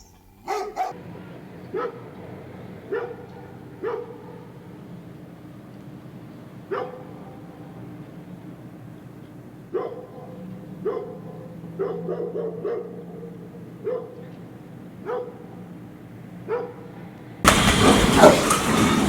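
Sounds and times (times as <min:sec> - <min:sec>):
dog barking: 0:00.0 - 0:01.0, 0:01.6 - 0:02.2, 0:02.8 - 0:05.0, 0:06.6 - 0:07.8, 0:09.6 - 0:19.0
loud rough noisy sound: 0:17.5 - 0:19.0.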